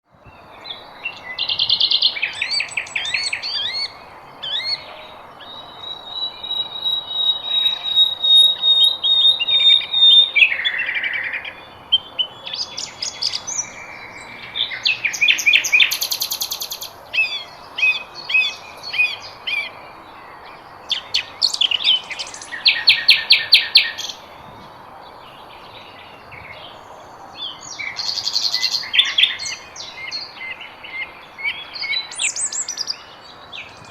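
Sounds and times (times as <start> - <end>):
songbirds singing: 0.0 - 33.9
long high bird whistle: 5.5 - 10.7.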